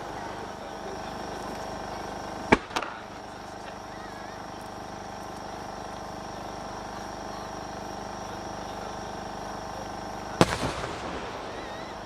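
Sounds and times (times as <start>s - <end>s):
background hum with high tones: 0.0s - 12.0s
crackle and rumbling echo: 10.4s - 12.0s
firework shell bursting: 10.4s - 12.0s.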